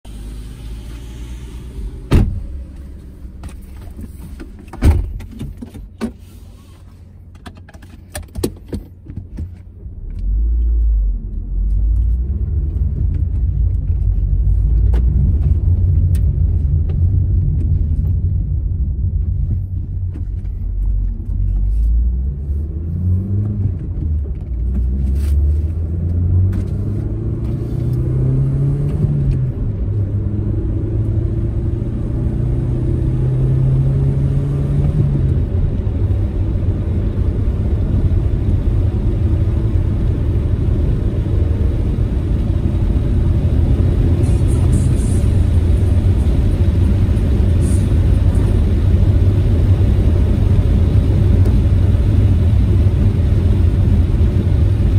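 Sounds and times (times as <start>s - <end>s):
car engine and road rumble: 0.0s - 54.9s
sharp clicks and knocks: 7.3s - 10.3s.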